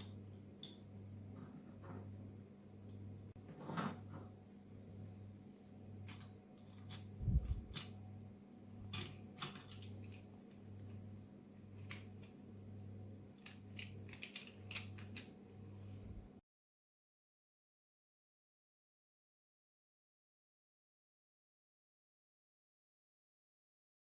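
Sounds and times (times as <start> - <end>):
clicks of model car parts: 8.9 - 11.0, 13.4 - 15.3.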